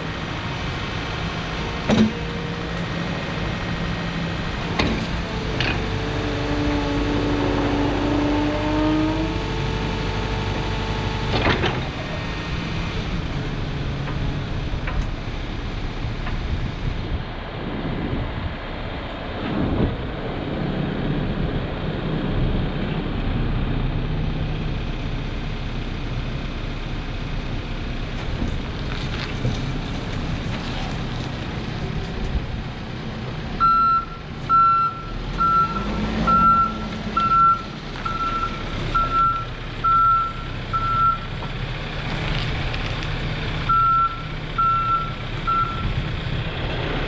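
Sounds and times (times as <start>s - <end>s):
diesel engine running: 0.0s - 47.0s
metal clunks: 1.9s - 2.2s.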